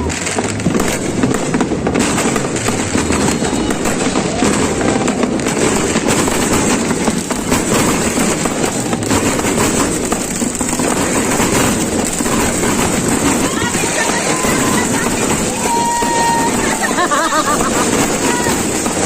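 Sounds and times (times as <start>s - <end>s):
firecrackers crackling: 0.0s - 19.0s.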